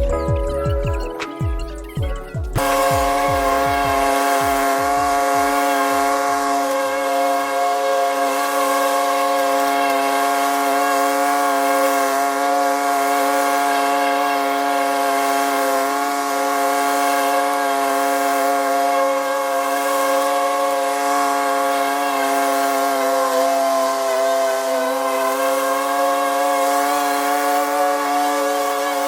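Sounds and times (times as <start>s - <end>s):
small engine running at high speed: 2.4s - 29.0s.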